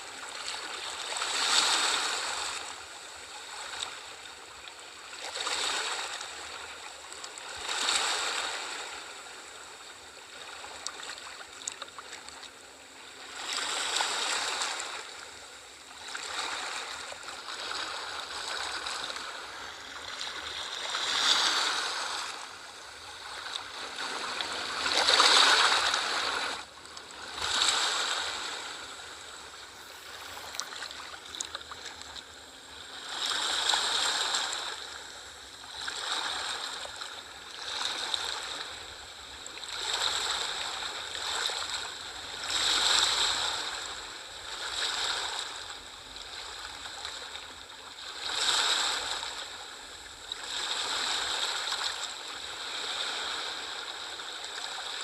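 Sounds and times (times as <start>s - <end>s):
sea waves washing in: 16.1s - 36.9s.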